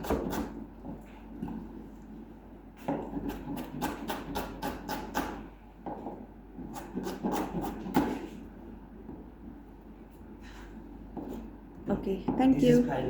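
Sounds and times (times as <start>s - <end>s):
knife chopping on cutting board: 0.0s - 0.6s, 2.9s - 8.4s.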